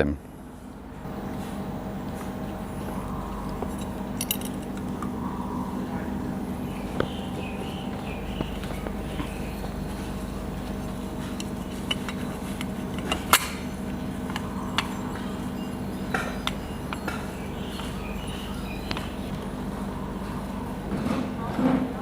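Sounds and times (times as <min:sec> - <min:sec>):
steady low hum: 0:00.0 - 0:22.0
metal parts clinking: 0:03.8 - 0:04.7.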